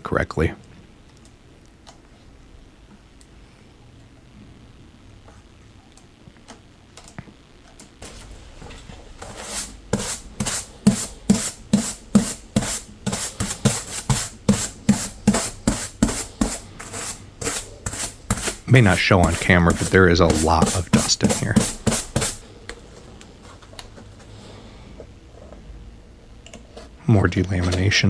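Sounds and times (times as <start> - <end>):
rubbing on guitar wood: 9.1 - 22.4.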